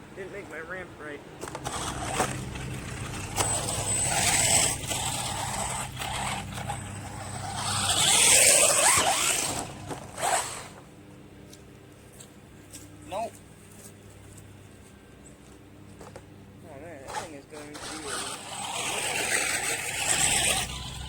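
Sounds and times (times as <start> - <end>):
tyres spinning on dirt: 1.4 - 10.8, 17.0 - 21.0
electric motor revving with whine: 1.6 - 10.8, 17.0 - 21.0.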